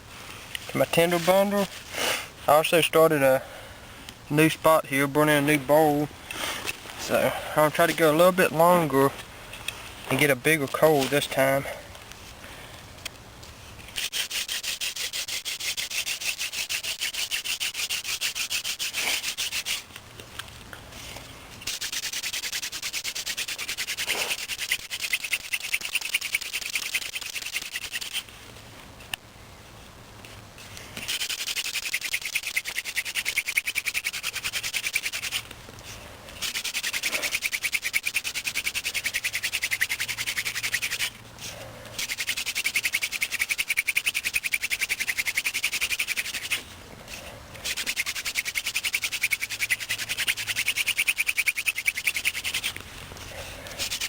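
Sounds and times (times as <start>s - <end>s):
spindle rasping in hearth board: 14.0s - 19.9s, 21.7s - 28.3s, 31.0s - 35.5s, 36.4s - 41.2s, 42.0s - 54.0s.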